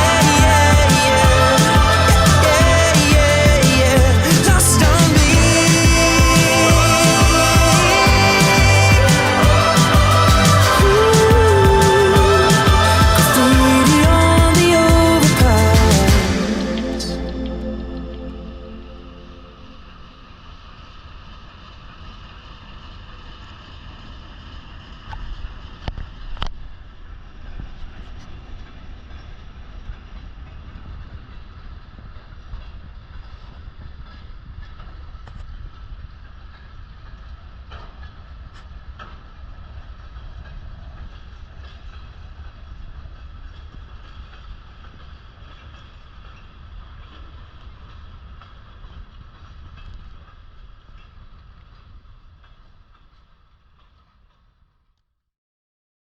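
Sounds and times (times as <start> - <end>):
train rumbling on rails: 0.0 - 54.4
sharp clicks of rails: 24.0 - 54.6.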